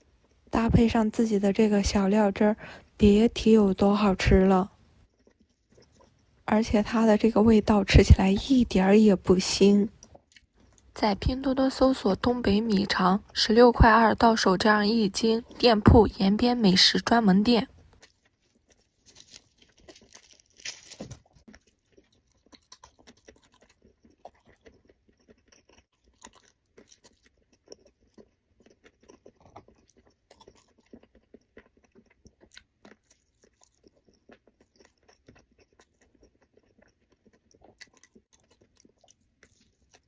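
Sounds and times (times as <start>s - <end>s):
wet chewing mouth sounds: 4.6s - 9.0s, 9.8s - 11.0s, 12.5s - 15.8s, 17.7s - 40.0s
loud bite: 19.1s - 21.4s.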